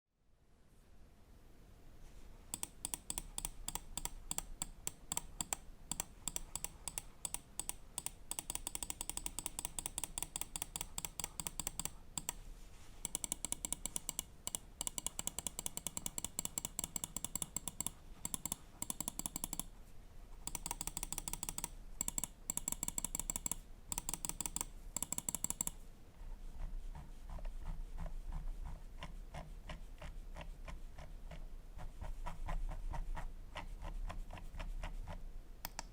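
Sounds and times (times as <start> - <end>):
mouse buttons clicking: 2.5 - 12.4, 13.0 - 19.7, 20.4 - 25.8, 35.6 - 35.9.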